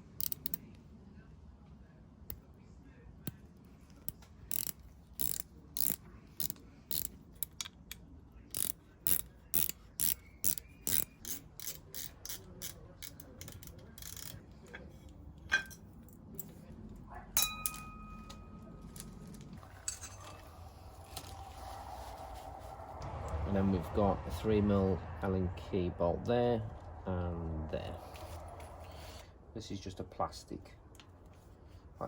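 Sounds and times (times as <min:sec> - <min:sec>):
hand ratchet clicking: 0:00.1 - 0:00.6, 0:04.1 - 0:07.8, 0:08.5 - 0:14.4
small metal part clinking: 0:00.1 - 0:00.6, 0:17.4 - 0:20.6.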